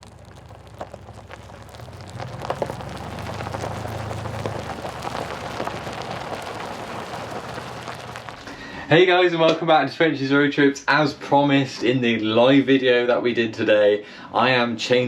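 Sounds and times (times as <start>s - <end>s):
rain pattering: 0.0s - 9.6s.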